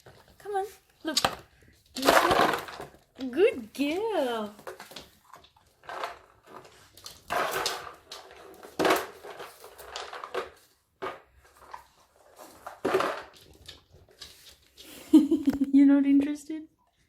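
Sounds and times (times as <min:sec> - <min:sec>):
kibble rattling in plastic bottle: 0:01.0 - 0:14.7
plastic bottle knocking and scraping: 0:04.6 - 0:13.8.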